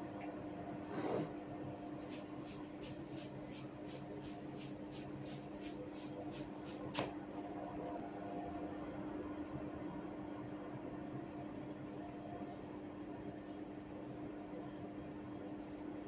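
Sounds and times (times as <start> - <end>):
steady low hum: 0.0 - 16.0
rubbing of hair strands: 1.7 - 7.2.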